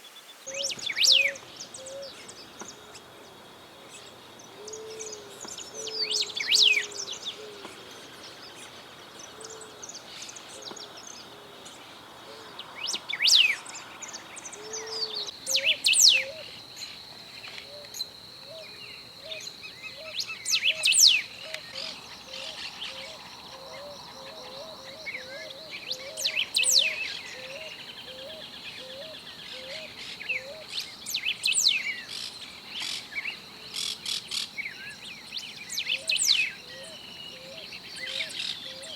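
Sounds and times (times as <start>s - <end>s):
bird singing sweeping whistles: 0.4s - 2.2s, 5.8s - 7.1s, 12.8s - 13.7s, 14.6s - 16.5s, 24.7s - 32.1s.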